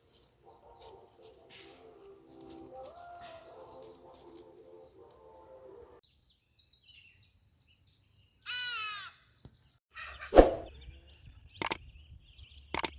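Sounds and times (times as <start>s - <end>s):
small birds chirping: 0.0s - 12.9s
crow cawing: 8.5s - 9.2s
sharp clicks: 11.6s - 11.8s.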